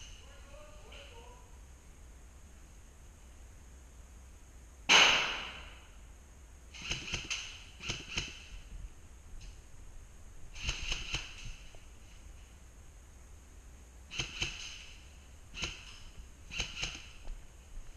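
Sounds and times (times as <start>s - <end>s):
airsoft guns firing: 4.9s - 5.8s, 6.7s - 8.6s, 10.6s - 11.7s, 14.1s - 17.2s.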